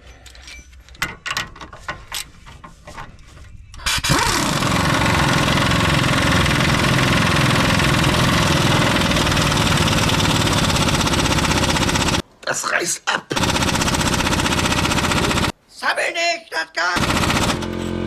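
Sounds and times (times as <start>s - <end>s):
motor running with low chugging: 4.1s - 12.2s, 13.4s - 15.5s, 17.0s - 18.0s.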